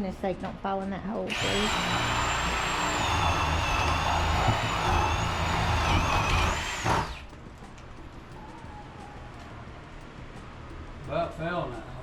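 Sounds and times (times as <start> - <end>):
power drill motor whine: 1.3 - 7.3.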